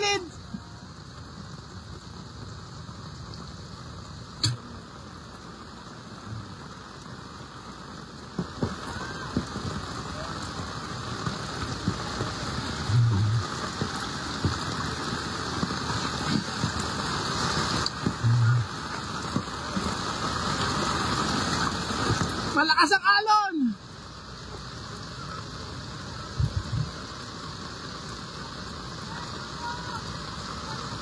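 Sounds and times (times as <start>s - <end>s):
steady rain: 0.0s - 31.0s
floodwater washing: 2.1s - 31.0s
sharp click: 4.4s - 4.6s.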